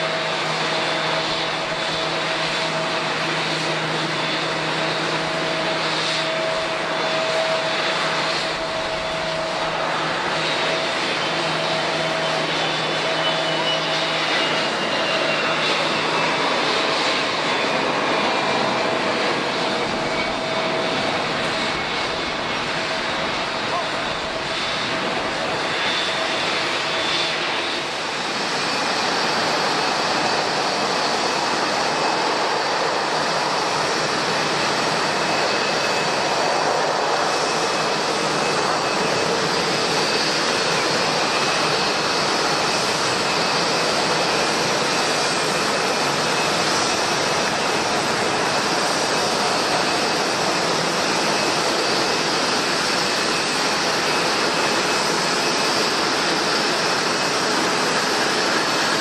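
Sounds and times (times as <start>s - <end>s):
jet engines running: 0.0s - 59.0s.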